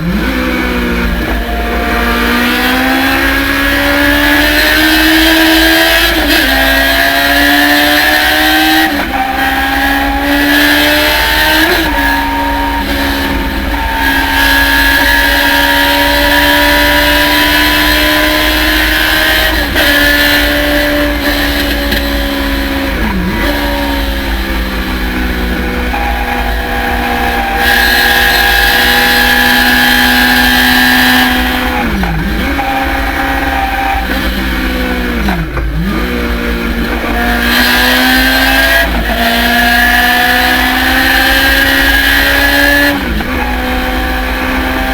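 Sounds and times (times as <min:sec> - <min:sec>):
race car engine revving: 0:00.0 - 0:44.9.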